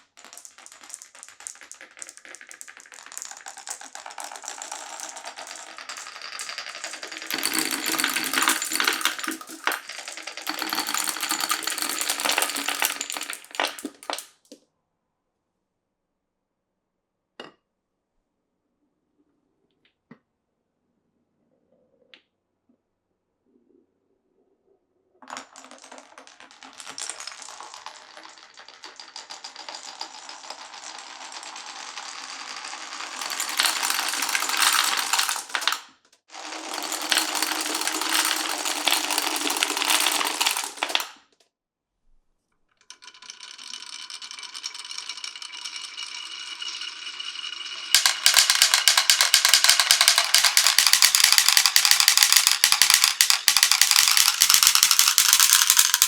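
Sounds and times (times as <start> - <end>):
marbles clattering rapid clicks: 0.0 - 14.6, 25.2 - 41.2, 42.9 - 56.0
marbles rolling on wooden track: 0.0 - 14.6, 25.2 - 41.2, 42.8 - 56.0.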